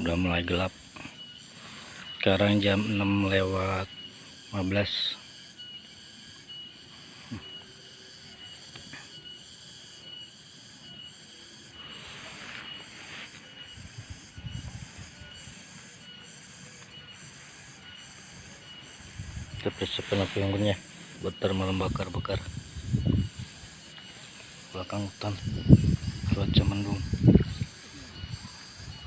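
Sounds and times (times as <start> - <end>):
insects shrilling: 0.0 - 29.0.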